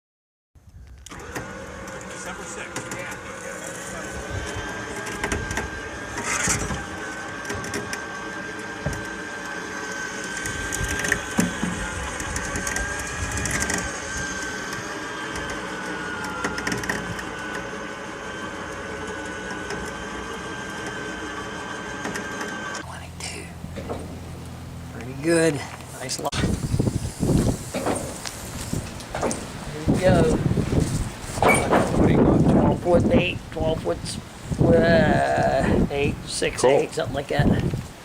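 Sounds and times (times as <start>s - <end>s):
sawmill engine drone: 1.0s - 37.0s
saw blade whine: 1.1s - 22.8s.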